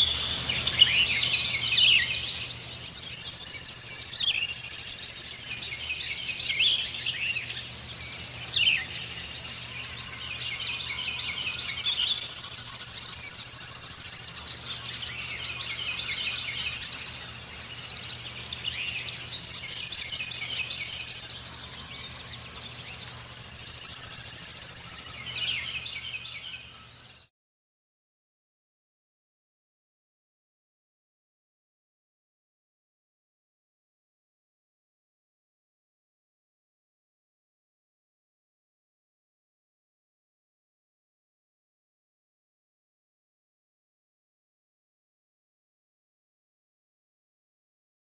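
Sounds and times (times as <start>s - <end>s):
bird high rapid trill: 0.0s - 7.4s, 8.0s - 27.3s
birds chirping softly: 0.0s - 27.3s.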